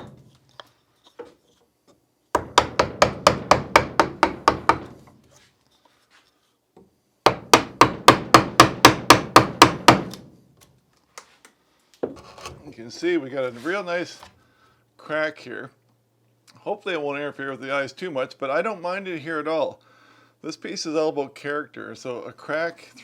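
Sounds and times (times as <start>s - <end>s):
mallet tapping carving gouge: 2.4s - 5.0s, 7.3s - 10.2s.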